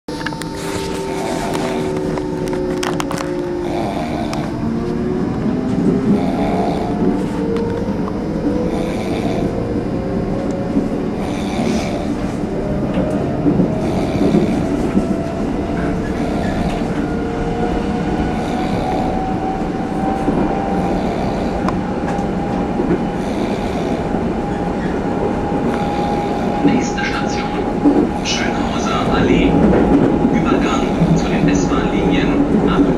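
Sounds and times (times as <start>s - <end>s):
train rumbling: 0.1s - 32.9s
man snoring loudly: 0.7s - 2.2s, 3.6s - 4.7s, 6.0s - 7.1s, 8.6s - 9.6s, 11.2s - 12.3s, 13.8s - 14.9s, 16.0s - 17.0s, 18.3s - 19.2s, 20.7s - 21.7s, 23.2s - 24.1s, 25.7s - 27.0s.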